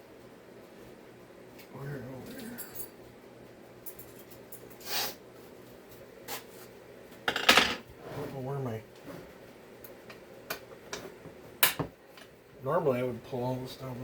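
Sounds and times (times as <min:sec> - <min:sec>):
metal parts and tools clinking: 0:02.2 - 0:02.9.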